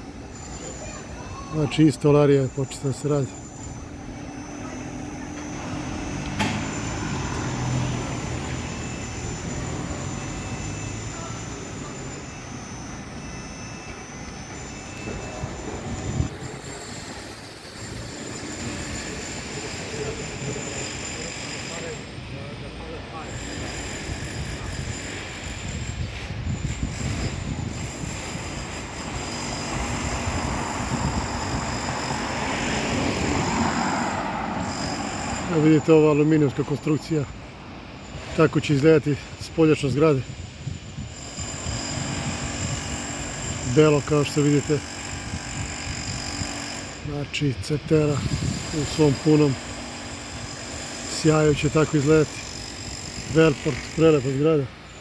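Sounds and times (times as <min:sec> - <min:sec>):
street traffic: 0:00.0 - 0:55.0
vehicle engine hum: 0:03.4 - 0:18.0, 0:27.1 - 0:38.6.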